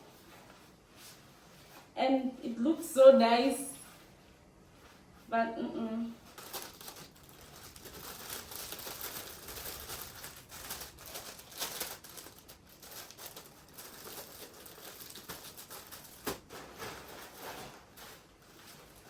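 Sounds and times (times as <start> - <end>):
small handling noises: 0.0 - 19.0
plastic packaging rustling: 6.0 - 19.0.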